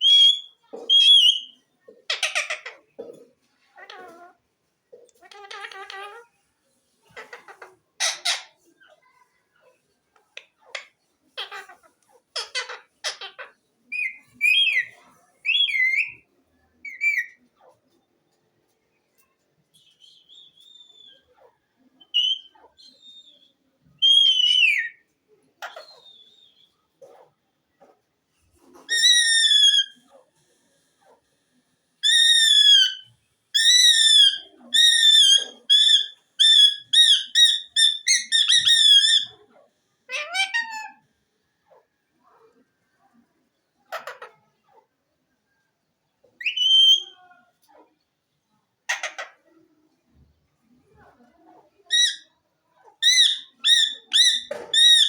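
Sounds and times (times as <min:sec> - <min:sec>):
parrot harsh raspy calls: 0:00.0 - 0:03.0, 0:05.2 - 0:06.3, 0:07.1 - 0:09.0, 0:10.6 - 0:16.2, 0:28.8 - 0:30.2, 0:32.0 - 0:41.1, 0:43.9 - 0:44.8, 0:46.4 - 0:47.8, 0:48.9 - 0:49.4, 0:51.9 - 0:52.3, 0:52.9 - 0:55.0
parrot harsh cries: 0:10.7 - 0:14.9, 0:28.9 - 0:30.0, 0:40.1 - 0:41.0, 0:53.0 - 0:55.0
parrot whistles: 0:46.4 - 0:47.2.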